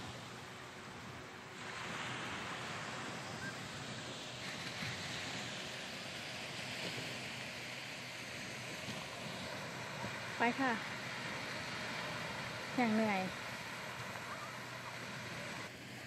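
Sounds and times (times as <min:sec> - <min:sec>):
sea surf on a beach: 0:00.0 - 0:16.0
wind: 0:00.0 - 0:16.0.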